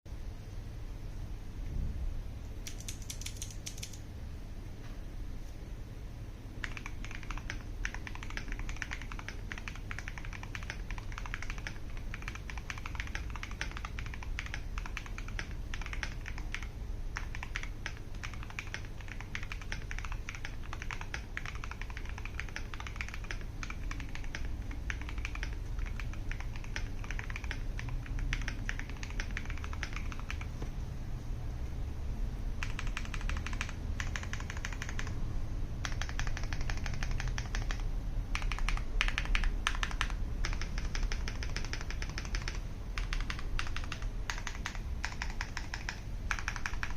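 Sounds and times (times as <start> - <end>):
mechanical keyboard typing: 2.6 - 4.0, 6.6 - 30.7, 32.6 - 35.2, 35.8 - 46.9.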